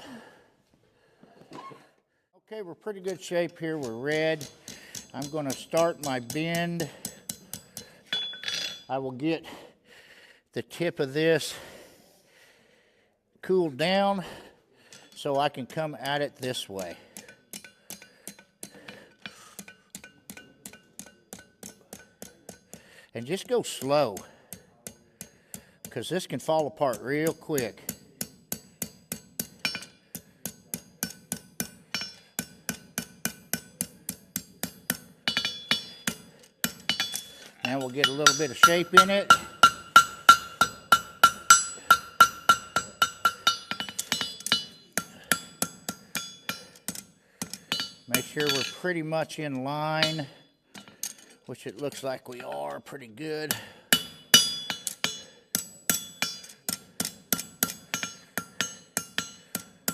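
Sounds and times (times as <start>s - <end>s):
hammer striking steel on anvil: 3.0s - 8.9s, 14.9s - 22.8s, 23.4s - 59.9s
hammer blows on hot steel: 26.7s - 49.0s.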